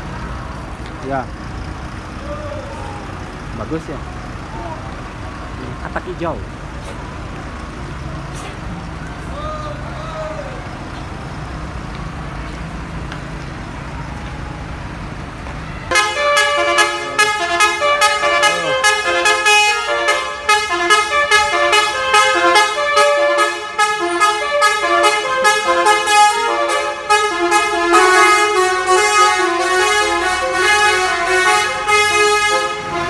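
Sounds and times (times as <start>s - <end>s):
bus engine idling: 0.0s - 33.0s
bus horn playing a tune: 15.7s - 33.0s.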